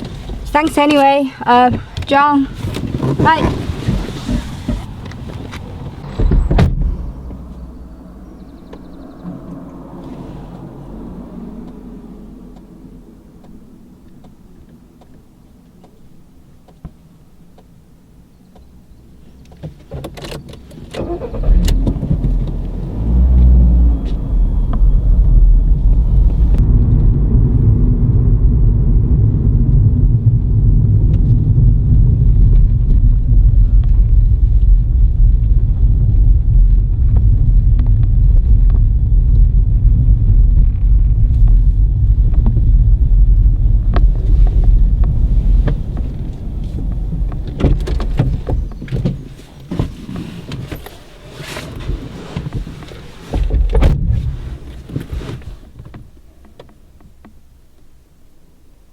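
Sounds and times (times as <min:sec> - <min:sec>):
road noise: 0:00.0 - 0:58.9
car engine running: 0:21.0 - 0:57.2.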